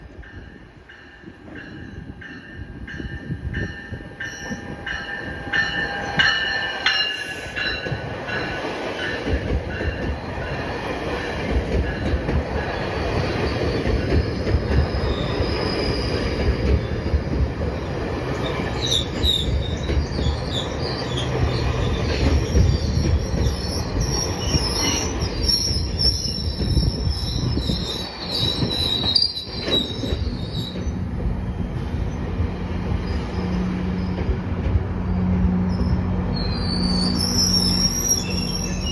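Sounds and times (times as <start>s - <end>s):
deep train rumble: 0.0s - 38.9s
diesel train passing: 0.0s - 38.9s
high-pitched wheel squeals: 18.8s - 30.9s, 35.8s - 38.9s.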